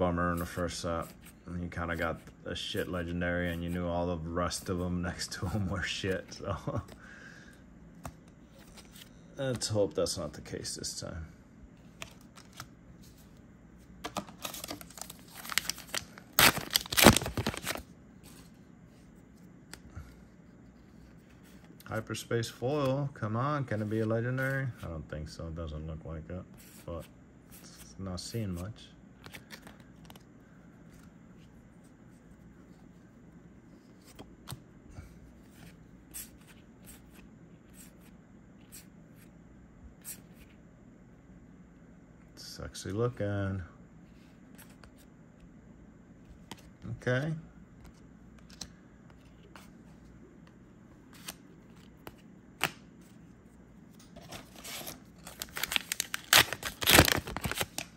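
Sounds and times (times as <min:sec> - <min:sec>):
foil wrapper tearing and crinkling: 0:14.4 - 0:17.8, 0:55.2 - 0:57.9.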